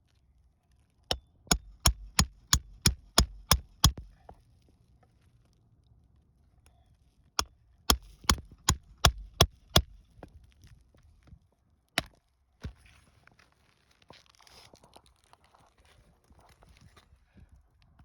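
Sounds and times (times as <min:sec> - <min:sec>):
hammer striking metal tool: 0:01.5 - 0:04.0.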